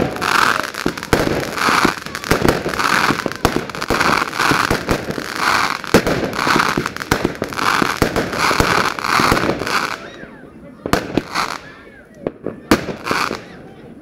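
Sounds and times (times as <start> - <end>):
crackling hiss: 0.0 - 10.2
fireworks bangs and pops: 0.0 - 10.2, 10.8 - 13.6.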